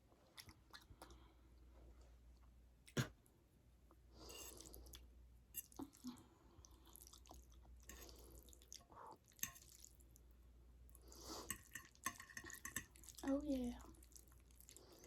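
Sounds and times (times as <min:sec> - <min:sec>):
wet chewing of noodles: 0:00.0 - 0:01.7, 0:04.2 - 0:10.3, 0:13.9 - 0:15.0.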